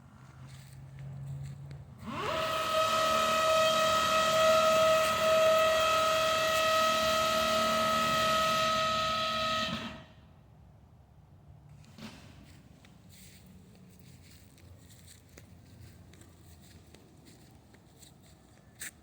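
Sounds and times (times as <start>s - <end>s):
loud whistle blast with hiss: 2.7s - 10.0s.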